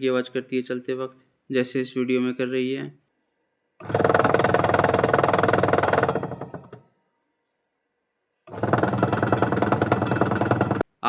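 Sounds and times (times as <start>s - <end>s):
rattling pulley clatter: 3.8s - 6.8s, 8.5s - 10.9s
washing machine running: 3.8s - 6.8s, 8.5s - 10.9s.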